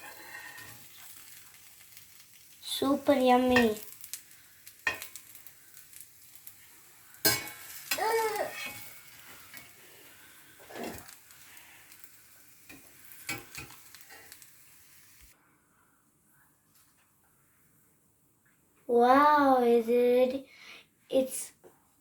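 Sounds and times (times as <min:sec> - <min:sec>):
dosa sizzling in a pan: 0:00.0 - 0:15.4.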